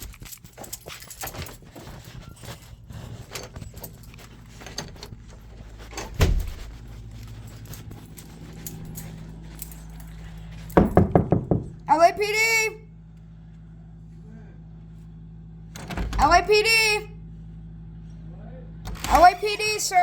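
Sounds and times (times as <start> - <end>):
handling clicks and rattles: 0.0 - 11.7
footsteps: 0.0 - 11.8.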